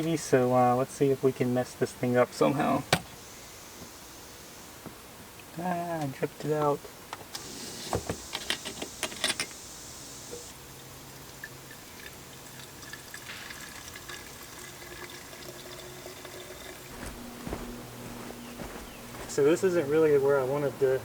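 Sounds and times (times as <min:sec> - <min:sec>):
fuel pouring into tank: 0:11.2 - 0:16.9
handling sounds: 0:16.9 - 0:19.4.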